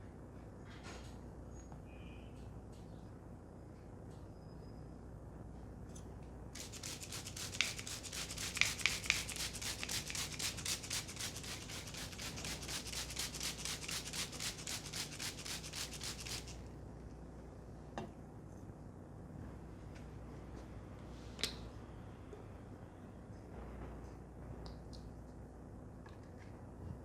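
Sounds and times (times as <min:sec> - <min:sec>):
hands rubbing hair and scalp: 0:06.6 - 0:16.6.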